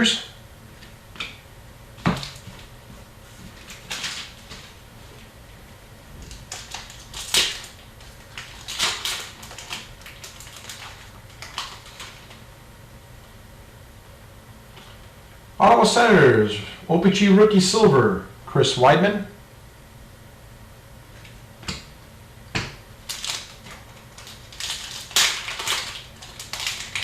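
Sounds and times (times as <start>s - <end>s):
cards rustling: 23.1s - 27.0s.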